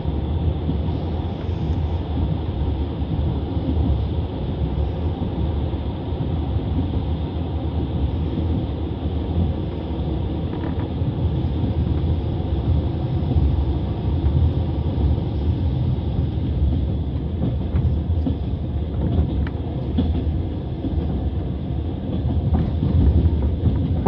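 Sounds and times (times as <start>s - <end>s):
train wheels rumbling on rails: 0.0s - 24.0s.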